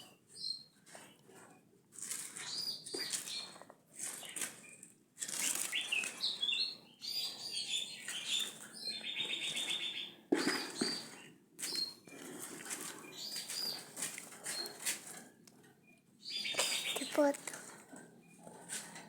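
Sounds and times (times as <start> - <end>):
songbirds chirping: 0.0 - 19.0
bird trill: 5.6 - 11.1, 16.2 - 17.3.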